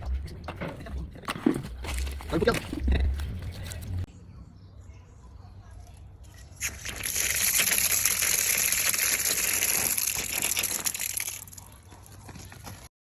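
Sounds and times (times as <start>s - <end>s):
water gushing from a hose tap: 6.6s - 11.6s.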